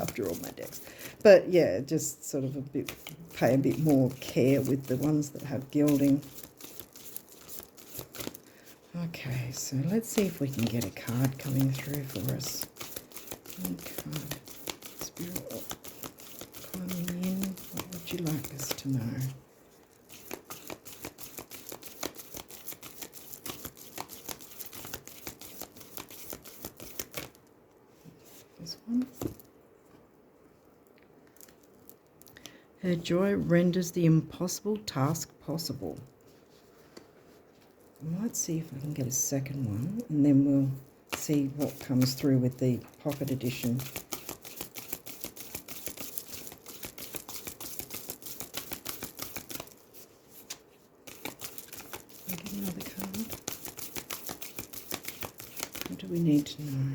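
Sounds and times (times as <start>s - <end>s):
cards being shuffled: 0.0s - 1.2s, 2.8s - 8.7s, 9.4s - 27.4s, 28.2s - 29.5s, 41.1s - 56.9s.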